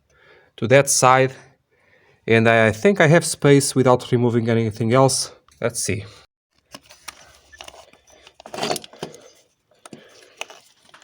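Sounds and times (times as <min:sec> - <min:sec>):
metal scrape: 0:07.4 - 0:09.5.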